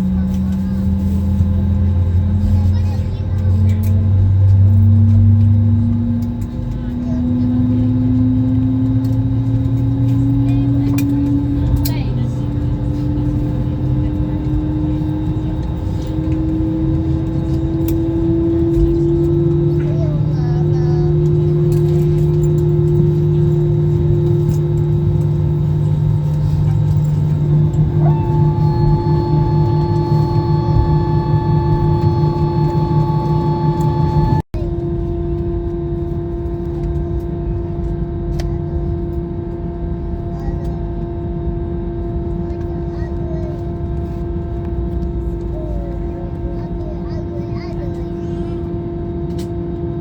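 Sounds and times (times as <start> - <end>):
jet engine and airflow drone: 0.0 - 50.0
steady hum: 0.0 - 50.0.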